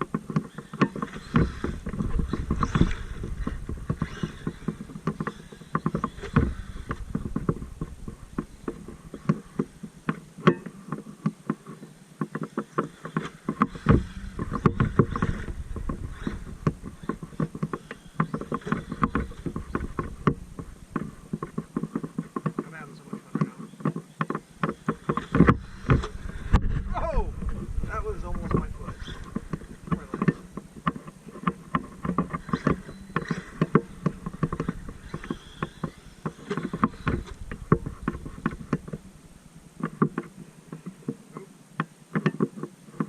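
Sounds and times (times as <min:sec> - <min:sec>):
low rumble: 0:26.4 - 0:28.9.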